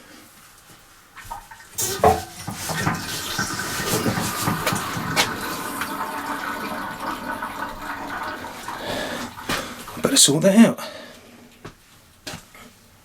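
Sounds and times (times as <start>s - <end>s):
hydraulic oil rushing and gurgling: 1.8s - 10.0s.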